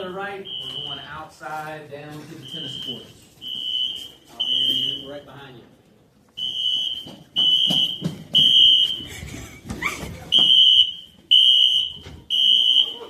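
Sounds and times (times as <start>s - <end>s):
fire alarm beeping: 0.4s - 1.2s, 2.4s - 5.3s, 6.4s - 9.1s, 10.3s - 13.0s.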